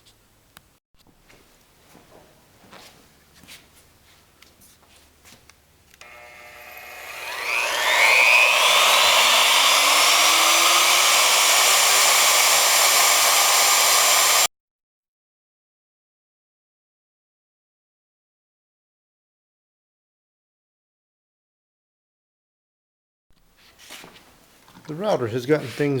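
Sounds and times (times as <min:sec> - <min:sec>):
electric router motor whine: 0:06.0 - 0:14.5.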